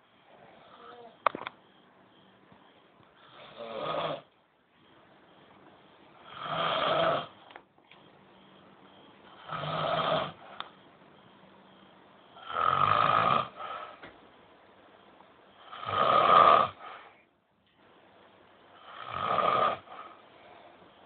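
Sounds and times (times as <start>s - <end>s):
quiet breathing: 0.0s - 5.4s, 13.4s - 14.2s, 16.7s - 17.4s, 19.7s - 21.0s
man snoring: 3.2s - 4.3s, 6.2s - 7.4s, 9.4s - 10.4s, 12.4s - 14.0s, 15.6s - 17.0s, 18.8s - 20.1s.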